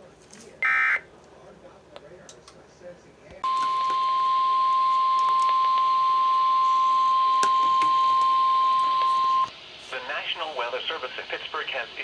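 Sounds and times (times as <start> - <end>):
steady warning alarm beep: 3.4 - 9.5.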